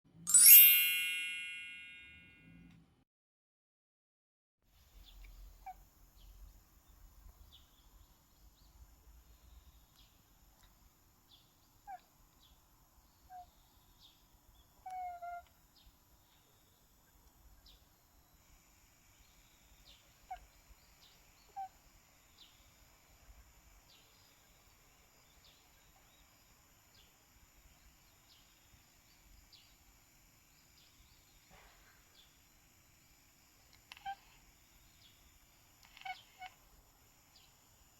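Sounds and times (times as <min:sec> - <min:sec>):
small birds chirping: 0:04.9 - 0:18.2, 0:19.1 - 0:37.9.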